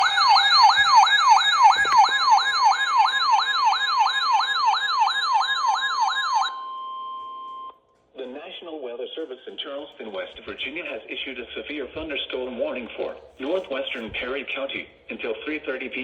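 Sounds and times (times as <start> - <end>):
rising and falling alert siren: 0.0 - 6.8
steady alarm tone: 0.0 - 7.7.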